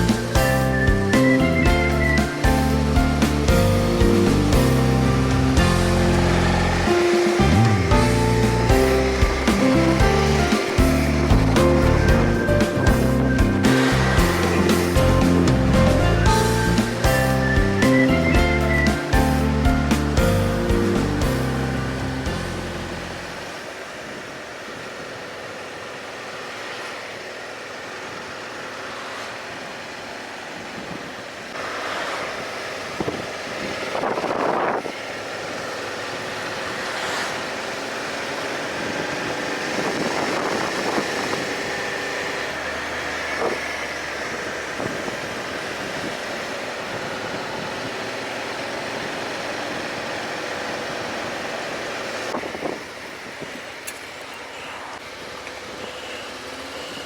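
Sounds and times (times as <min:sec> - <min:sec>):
motorcycle engine and road noise: 0:00.0 - 0:57.0
wind on microphone: 0:31.9 - 0:42.0, 0:52.2 - 0:53.8.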